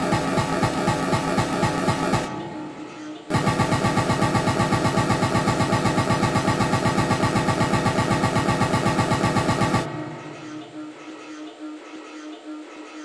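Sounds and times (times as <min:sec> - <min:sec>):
pulsing synthesized buzz: 0:00.0 - 0:11.0
soft pulsing tone: 0:00.0 - 0:11.0.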